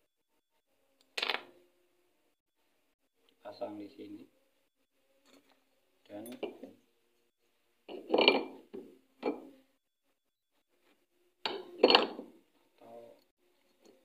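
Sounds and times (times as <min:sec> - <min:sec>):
metal parts and tool clinking: 0:05.2 - 0:06.8.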